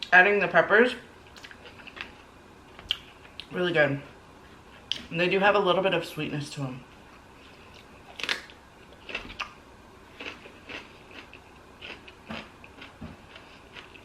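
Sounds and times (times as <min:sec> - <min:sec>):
chewing with mouth clicks: 0:10.2 - 0:14.0.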